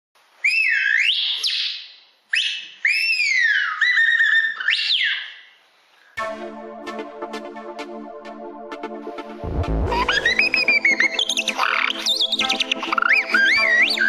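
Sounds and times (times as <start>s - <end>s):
electronic music: 6.2s - 14.0s
bird whistle imitating birdsong: 10.0s - 14.0s.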